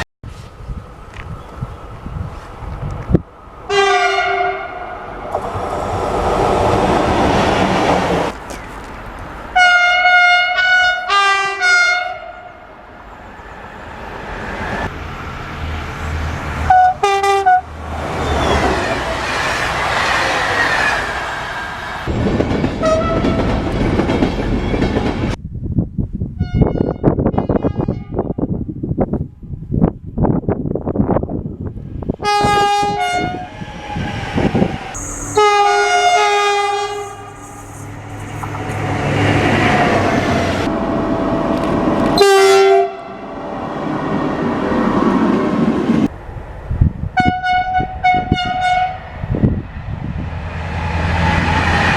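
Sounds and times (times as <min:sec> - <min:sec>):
passing train rumbling and rattling: 0:00.0 - 0:25.5, 0:26.8 - 0:51.9
train horn blasts: 0:03.7 - 0:05.0, 0:09.6 - 0:12.7, 0:16.7 - 0:17.7, 0:32.2 - 0:33.5, 0:34.4 - 0:43.4, 0:47.2 - 0:49.1.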